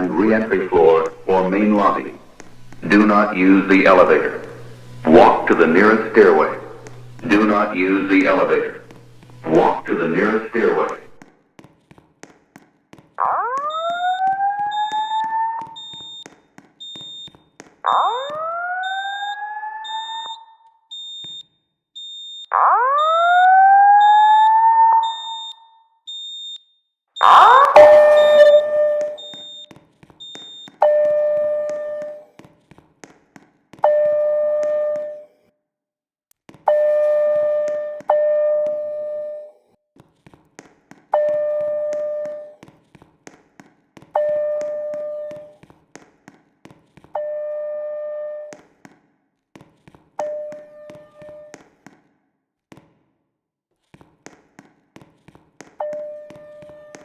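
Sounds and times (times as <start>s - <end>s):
repeating steady-pitched alarm tone: 0.0s - 11.3s, 13.2s - 32.3s, 33.8s - 35.2s, 36.7s - 39.5s, 41.2s - 42.6s, 44.2s - 45.6s, 47.2s - 48.6s, 50.2s - 51.6s, 55.8s - 57.0s
fire alarm whoop tone: 13.2s - 32.2s
faint high beeping: 13.7s - 16.2s, 27.2s - 31.4s.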